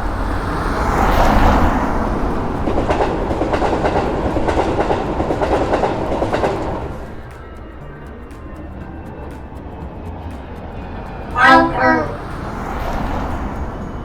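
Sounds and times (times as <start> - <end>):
wheels clacking over rail joints: 0.0 - 7.6
train passing: 0.0 - 14.0.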